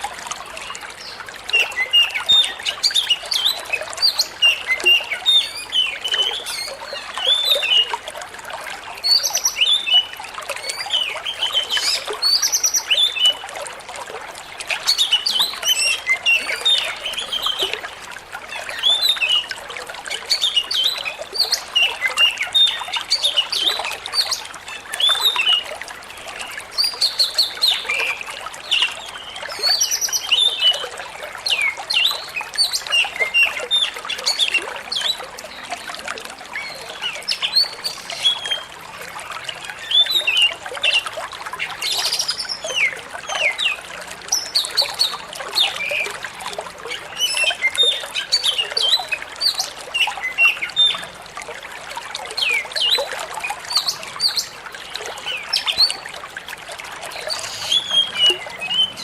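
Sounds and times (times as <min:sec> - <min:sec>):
water trickling: 0:00.0 - 0:59.0
bird singing chirps and whistles: 0:57.2 - 0:59.0.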